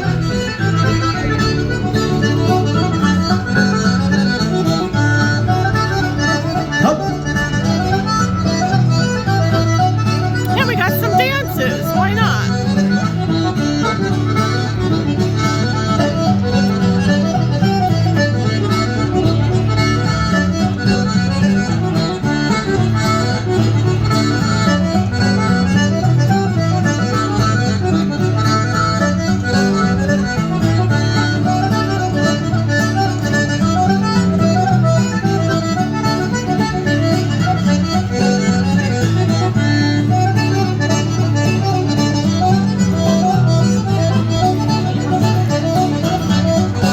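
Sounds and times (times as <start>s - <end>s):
live folk music: 0.0s - 46.9s.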